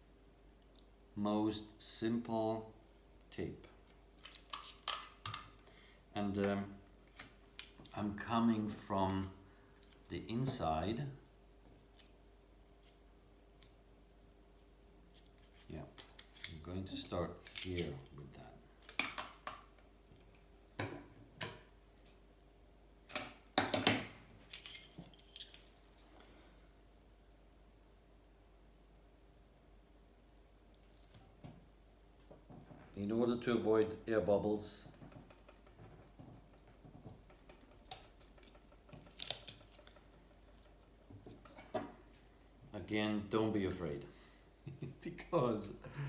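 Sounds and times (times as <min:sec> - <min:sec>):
adhesive tape crackling: 0:04.2 - 0:05.6, 0:37.8 - 0:40.1
crackling of adhesive tape: 0:04.2 - 0:05.7, 0:15.2 - 0:18.1, 0:30.7 - 0:31.4, 0:37.8 - 0:40.7.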